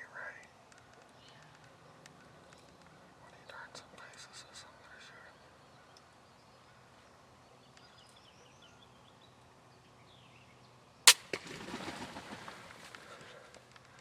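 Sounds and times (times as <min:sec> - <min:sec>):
smack of arrow hit: 0:11.1 - 0:11.3
crossbow firing crack: 0:11.1 - 0:11.8.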